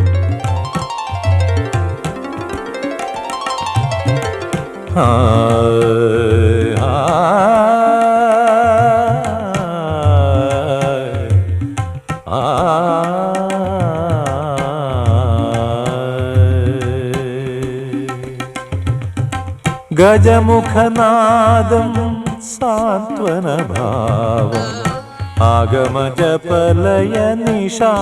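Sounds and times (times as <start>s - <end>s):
ornamented melodic singing: 0.0s - 11.0s, 19.9s - 28.0s.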